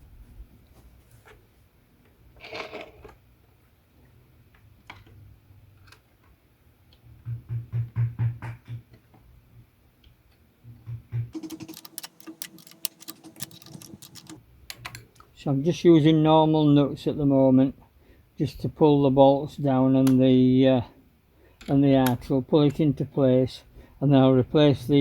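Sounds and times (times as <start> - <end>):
fast clicking: 11.4 - 15.0
small parts clicking: 11.4 - 15.3.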